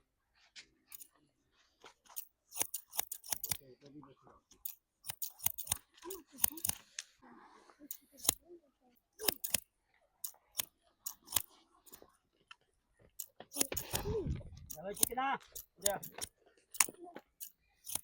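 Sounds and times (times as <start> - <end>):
scissors snipping hair: 2.1 - 3.6, 4.6 - 6.9, 7.9 - 8.4, 9.2 - 9.6, 10.2 - 12.0, 13.2 - 14.0, 14.7 - 18.0.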